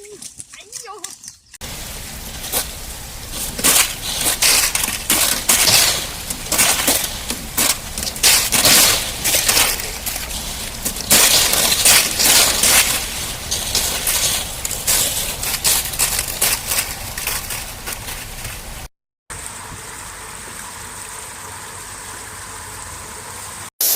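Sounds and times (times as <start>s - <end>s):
brittle material being crushed: 3.3s - 18.6s.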